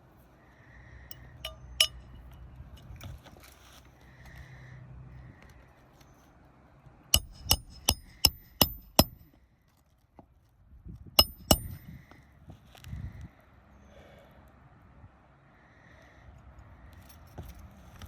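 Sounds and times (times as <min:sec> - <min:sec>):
hammer striking nails: 0:07.2 - 0:09.2, 0:11.2 - 0:11.8.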